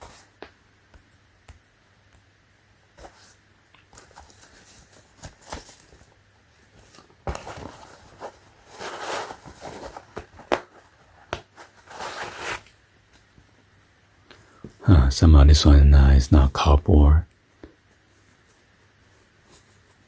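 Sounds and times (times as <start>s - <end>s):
fabric rustling: 3.0s - 12.7s.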